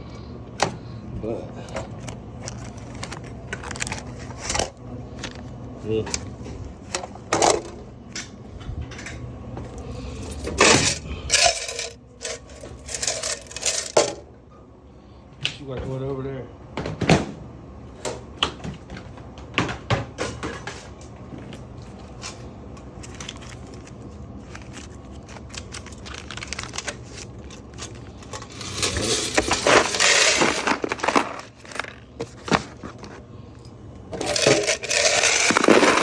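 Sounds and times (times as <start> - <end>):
steady low hum: 0.0 - 36.0
coins clattering in vending machine: 2.4 - 4.7, 7.0 - 7.8, 10.1 - 14.2, 23.0 - 32.6, 34.1 - 36.0.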